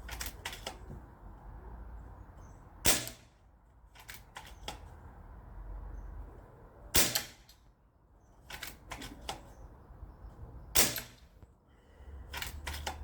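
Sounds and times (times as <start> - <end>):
air rifle shots: 2.8 - 3.3, 7.0 - 7.5, 10.8 - 11.3.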